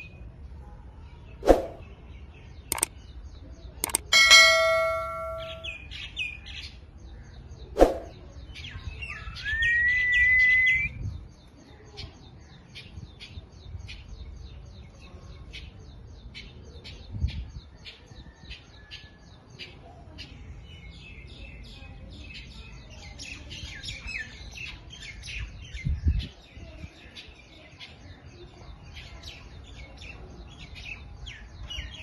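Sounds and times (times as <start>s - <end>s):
ringing tone: 3.8s - 5.8s.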